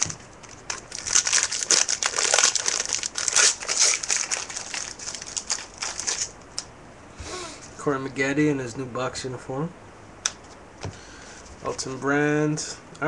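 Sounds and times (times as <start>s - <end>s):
wrapper being torn and crinkled: 0.0s - 6.4s.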